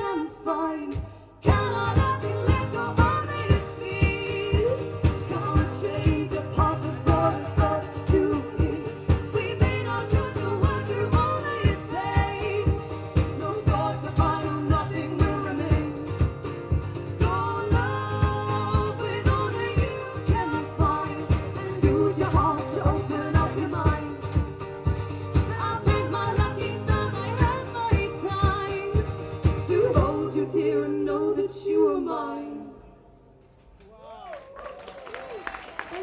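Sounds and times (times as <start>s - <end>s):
voices singing: 0.0s - 33.1s
live band playing: 1.5s - 30.1s.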